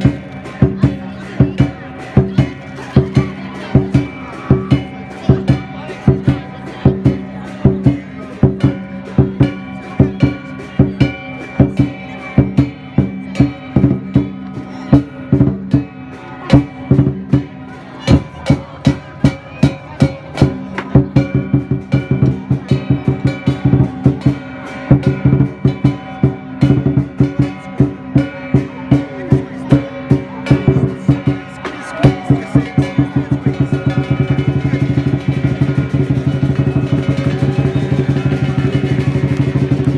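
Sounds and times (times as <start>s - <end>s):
fast percussive strikes: 0.0s - 39.9s.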